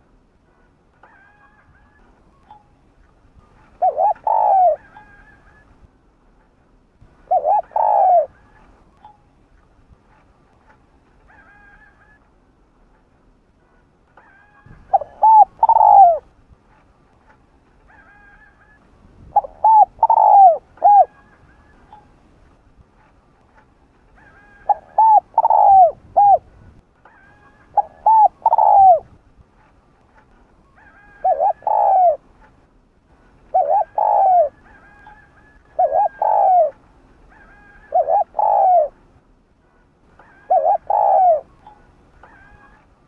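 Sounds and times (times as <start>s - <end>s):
dove cooing: 3.6s - 5.7s, 7.2s - 8.7s, 14.2s - 16.3s, 17.9s - 22.1s, 24.2s - 26.5s, 27.1s - 29.1s, 30.7s - 32.3s, 33.5s - 39.0s, 40.1s - 42.9s.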